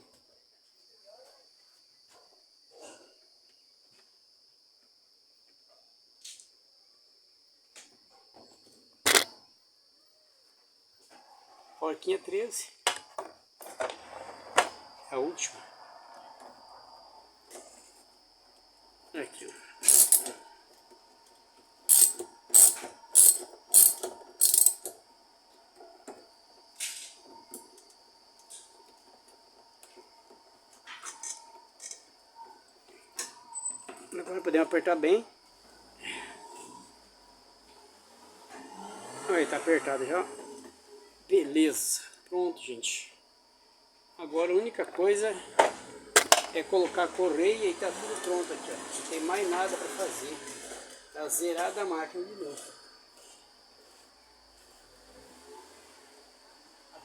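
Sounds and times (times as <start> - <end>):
crickets trilling: 0.0 - 57.0
metal parts clicking: 9.1 - 9.3, 19.8 - 20.4, 21.9 - 24.9.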